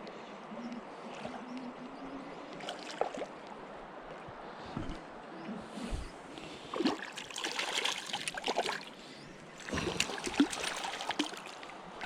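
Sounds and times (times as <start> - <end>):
fish splashing in water: 6.7 - 8.9, 9.6 - 11.7
stream rushing: 9.6 - 12.0.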